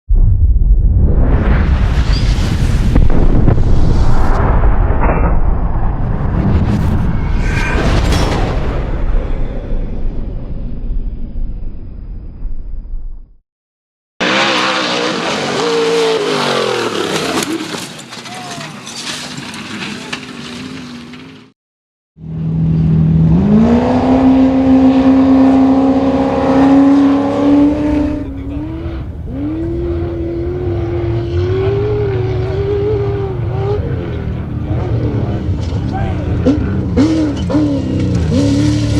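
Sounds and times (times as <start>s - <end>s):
race vehicle engine revving: 14.2s - 17.8s, 22.4s - 38.9s.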